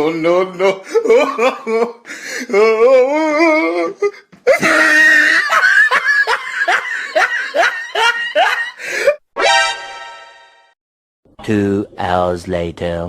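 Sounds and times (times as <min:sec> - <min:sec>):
loud rhythmic laughter: 0:04.5 - 0:09.2
warbling laugh: 0:04.5 - 0:09.2.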